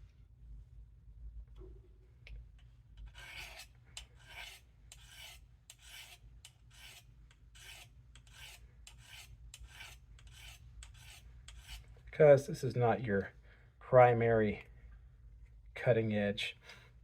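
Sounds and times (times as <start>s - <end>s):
knife rasping on honing rods: 3.0s - 12.0s.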